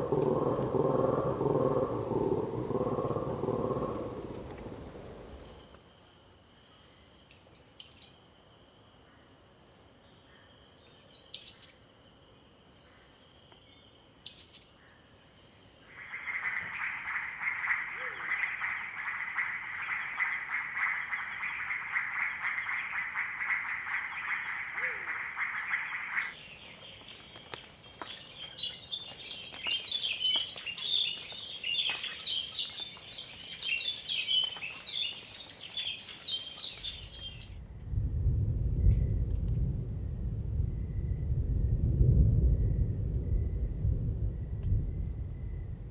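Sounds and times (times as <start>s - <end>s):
sharp bird calls: 0.0s - 5.6s, 16.0s - 37.6s
chorus of bird chirps: 0.0s - 5.7s, 13.6s - 37.6s
dense insect buzz: 0.0s - 5.7s
insects trilling: 0.0s - 26.4s, 27.3s - 37.6s.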